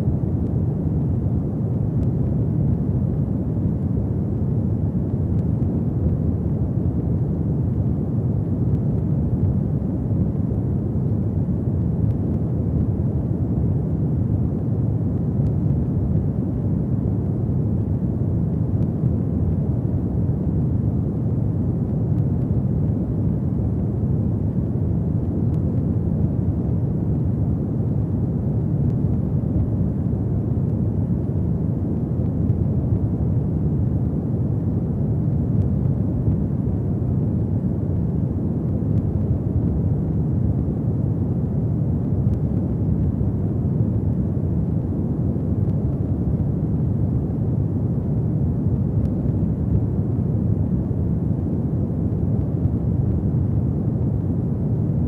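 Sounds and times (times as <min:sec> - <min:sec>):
faint fire crackles: 0:00.0 - 0:55.0.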